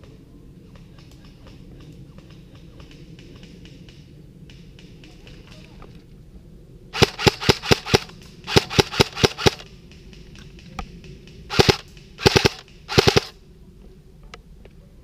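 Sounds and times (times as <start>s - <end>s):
airsoft gun shots: 7.0s - 9.7s, 11.5s - 13.3s.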